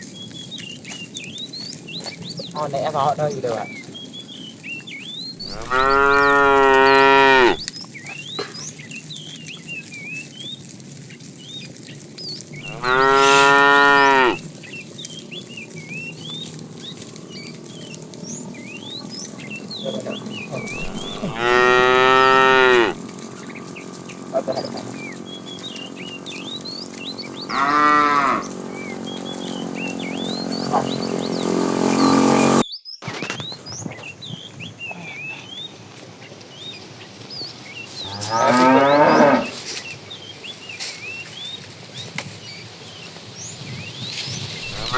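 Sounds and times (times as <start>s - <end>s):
cattle mooing: 5.4s - 7.6s, 12.6s - 14.4s, 16.4s - 32.6s, 38.0s - 39.7s, 44.6s - 44.9s.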